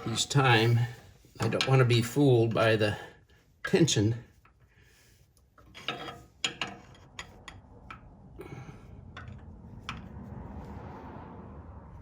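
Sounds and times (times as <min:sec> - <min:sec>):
wrench scraping: 0:05.6 - 0:08.1.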